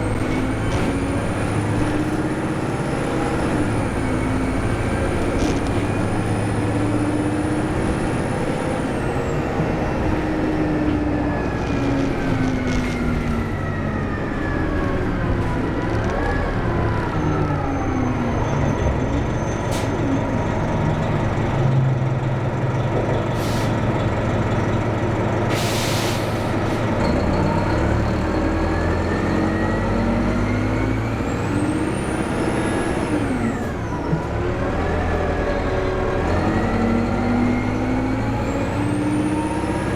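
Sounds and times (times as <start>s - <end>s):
bus diesel engine under load: 0.0s - 39.9s
air hiss: 25.5s - 26.6s.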